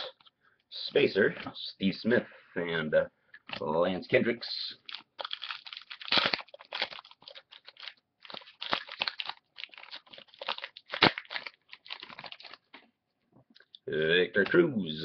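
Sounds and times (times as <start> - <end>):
wrapper crinkling and tearing: 4.8 - 12.8.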